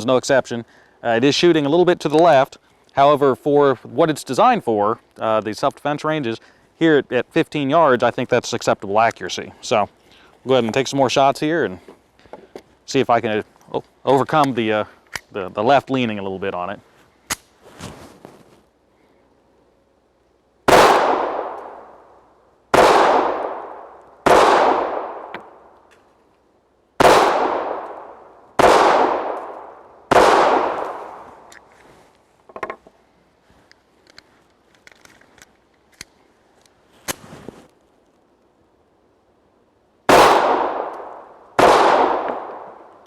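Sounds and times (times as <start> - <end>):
gun handling clicks: 14.4 - 15.3, 17.3 - 17.6, 33.7 - 37.2
pistol shots echoing: 20.7 - 21.9, 22.7 - 25.3, 27.0 - 31.2, 40.1 - 42.9.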